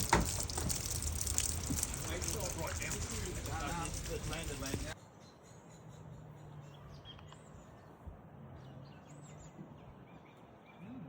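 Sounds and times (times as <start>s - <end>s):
bird chirps: 5.0s - 8.0s.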